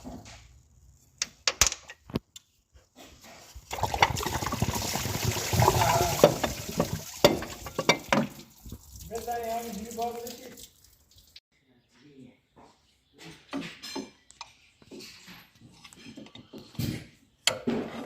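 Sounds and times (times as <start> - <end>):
liquid splashing and pouring: 3.6 - 11.4.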